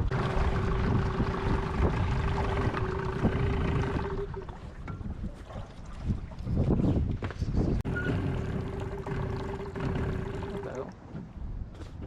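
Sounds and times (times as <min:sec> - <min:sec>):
steady whine: 0:00.0 - 0:04.5
wind buffeting microphone: 0:00.0 - 0:12.0.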